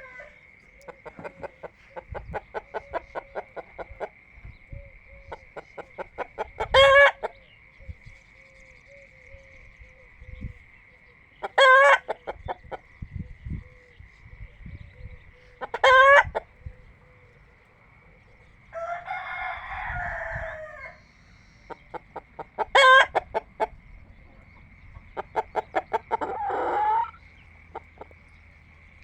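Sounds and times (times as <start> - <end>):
loud short chicken calls: 0.0 - 4.1, 5.3 - 7.4, 11.4 - 12.8, 15.4 - 16.5, 18.7 - 21.1, 21.7 - 23.7, 25.2 - 28.2
rooster crowing: 0.0 - 4.1, 6.0 - 7.3, 11.4 - 12.2, 15.6 - 16.4, 18.7 - 21.1, 22.6 - 23.4, 25.2 - 28.1
hens clucking: 0.0 - 4.6, 5.3 - 7.4, 11.4 - 12.9, 15.5 - 16.6, 21.7 - 28.4.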